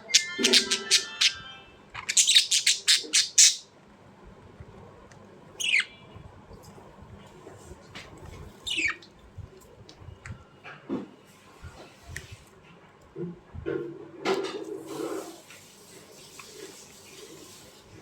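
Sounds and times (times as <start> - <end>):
birds chirping: 0.0 - 3.7, 5.6 - 6.3, 8.5 - 9.0.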